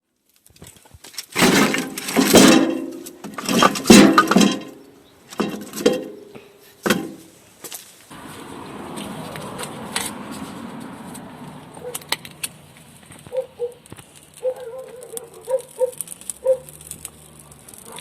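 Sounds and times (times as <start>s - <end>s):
hard objects clattering and clinking: 1.4s - 7.2s.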